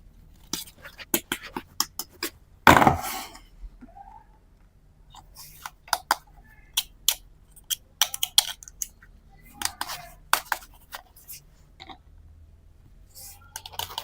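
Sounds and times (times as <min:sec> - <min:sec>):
plastic toy pieces clicking: 0:05.6 - 0:09.0, 0:13.6 - 0:14.0.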